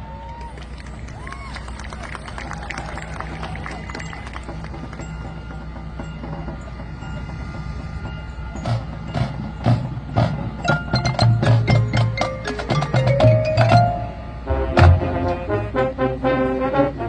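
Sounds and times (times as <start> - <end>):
soft sustained ringing tones: 3.7 - 14.6
mallet keyboard and chime strikes: 4.0 - 15.0.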